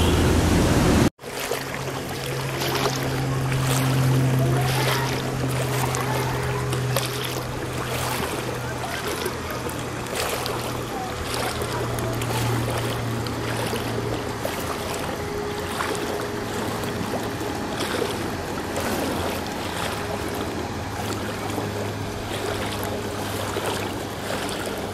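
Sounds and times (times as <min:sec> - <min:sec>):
vehicle engine running: 0:00.0 - 0:24.9
water splashing and sloshing: 0:00.0 - 0:24.9.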